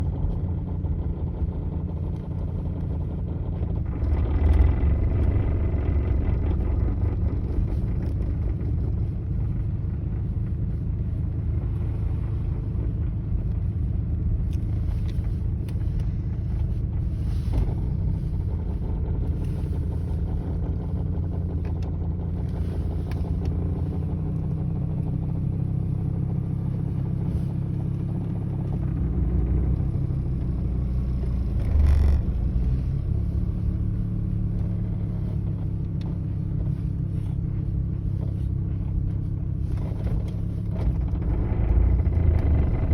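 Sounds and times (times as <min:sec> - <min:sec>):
engine running: 0:00.0 - 0:42.9.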